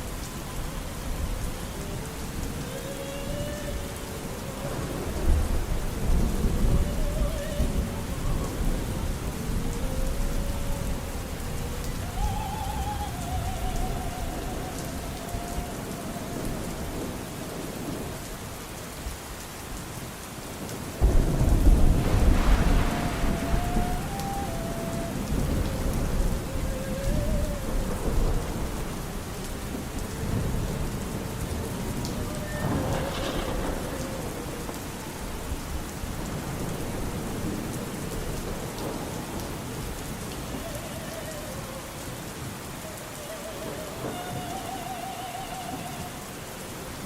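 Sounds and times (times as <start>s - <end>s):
heavy rain: 0.0s - 47.0s
low rumbling thunder: 0.0s - 47.0s
muffled opera singing: 0.0s - 47.0s.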